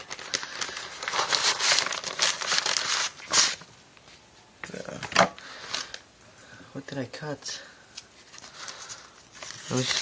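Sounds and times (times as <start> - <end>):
parcel packaging crinkling and tearing: 0.0 - 3.7, 8.2 - 10.0.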